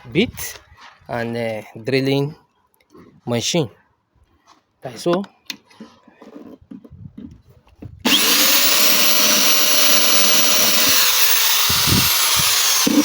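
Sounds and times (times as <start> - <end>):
electric drill running: 8.0 - 13.0.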